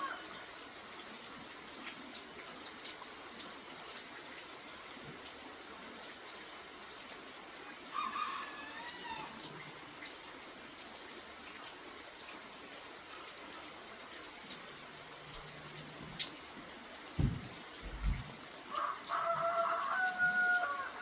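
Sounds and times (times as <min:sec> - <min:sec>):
light rain: 0:00.0 - 0:21.0
low thumps: 0:17.2 - 0:18.4.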